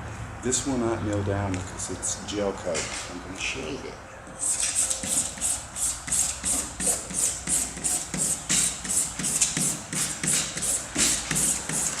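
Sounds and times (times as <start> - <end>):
rubbing on painted panel: 4.4 - 12.0.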